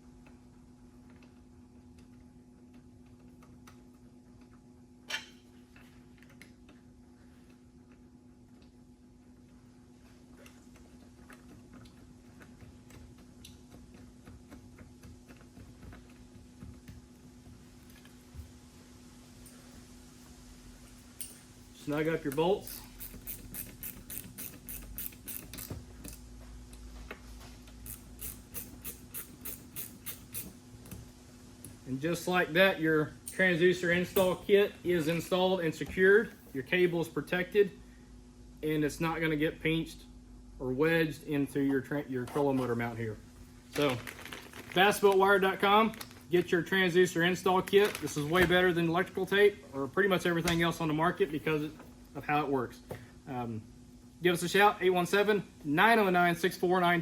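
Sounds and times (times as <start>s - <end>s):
steady low hum: 0.0s - 57.0s
ratchet wrench clicking: 22.6s - 26.2s, 27.8s - 30.5s.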